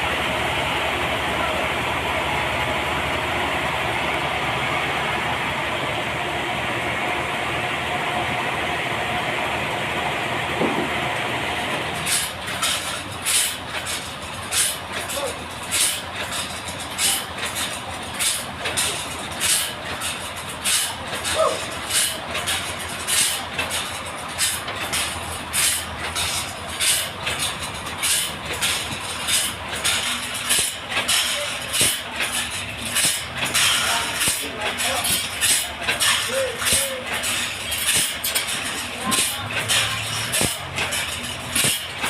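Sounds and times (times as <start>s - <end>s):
sawmill saw cutting log: 10.6s - 42.0s.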